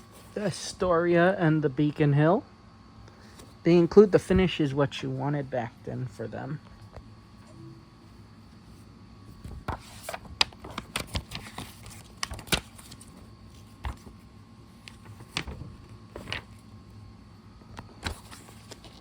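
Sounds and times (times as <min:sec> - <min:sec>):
paper pages turning: 0:09.4 - 0:16.7, 0:17.8 - 0:19.0.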